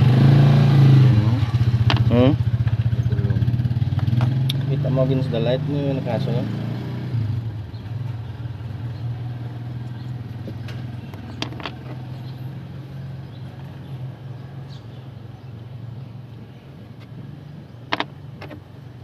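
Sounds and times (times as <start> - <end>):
car engine idling: 1.1 - 3.7, 8.5 - 19.0.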